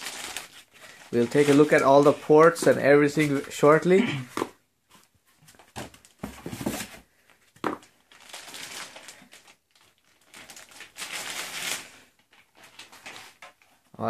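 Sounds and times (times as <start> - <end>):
plastic wrapping crinkling: 0.0 - 4.0, 7.8 - 13.7.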